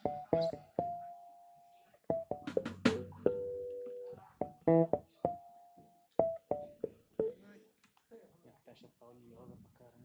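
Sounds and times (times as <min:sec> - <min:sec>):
guitar plucked notes and chords: 0:00.0 - 0:07.4.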